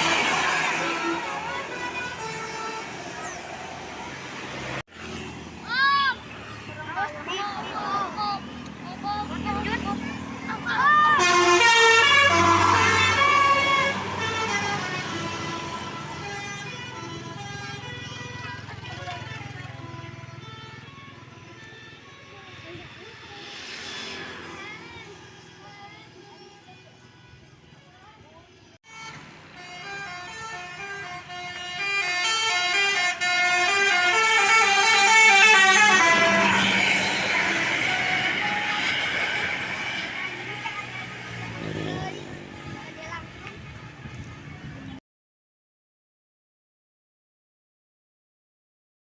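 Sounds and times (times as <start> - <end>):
air horn playing a tune: 0.0 - 3.2, 10.9 - 18.3, 28.9 - 42.0
loud rushing noise: 35.9 - 42.6.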